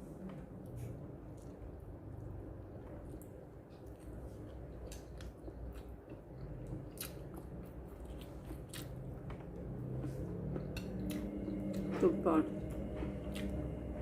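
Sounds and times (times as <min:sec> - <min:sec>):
chewing and crunching: 0:00.7 - 0:11.9, 0:12.8 - 0:13.7
washing machine humming: 0:08.6 - 0:14.0.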